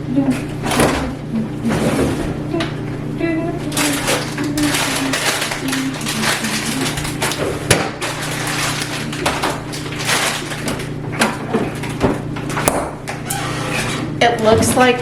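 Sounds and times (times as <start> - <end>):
plastic bag crinkling: 3.6 - 12.4.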